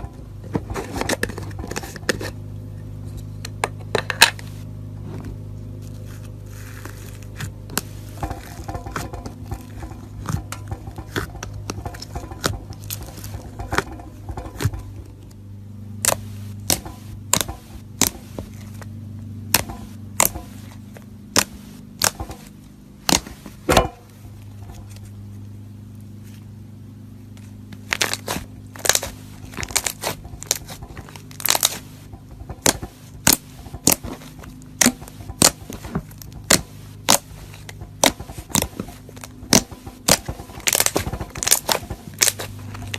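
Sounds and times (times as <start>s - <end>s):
steady low hum: 0.0s - 42.9s
slime crackling pops: 27.8s - 34.2s.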